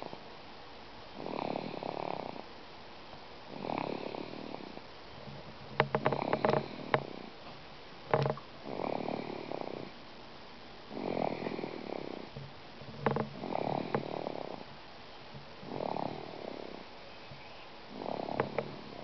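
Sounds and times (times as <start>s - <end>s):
rattling snores: 1.2s - 2.5s, 3.5s - 7.4s, 8.1s - 10.0s, 10.9s - 14.7s, 15.6s - 17.0s, 17.9s - 19.0s.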